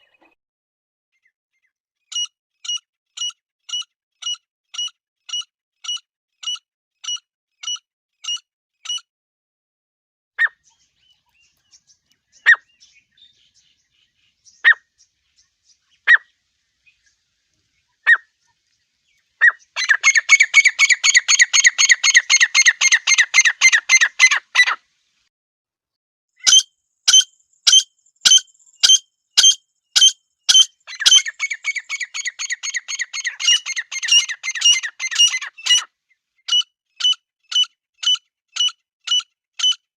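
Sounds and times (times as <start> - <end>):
partridge calls: 18.0 - 18.3, 19.4 - 24.8, 26.4 - 35.9, 36.5 - 39.8.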